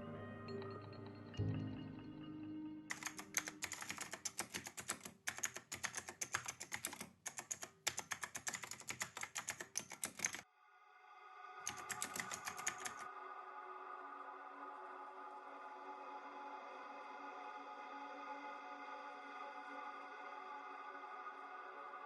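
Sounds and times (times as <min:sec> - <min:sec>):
rapid typing on keyboard: 0:02.9 - 0:10.4, 0:11.7 - 0:13.0.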